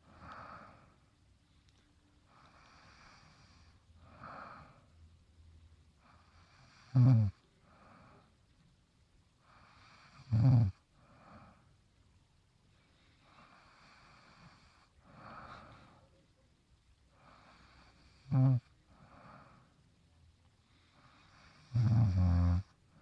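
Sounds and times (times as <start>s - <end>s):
soft breaths: 0.0s - 23.0s
woman snoring: 6.2s - 7.4s, 9.6s - 10.8s, 17.4s - 18.7s, 21.0s - 22.8s.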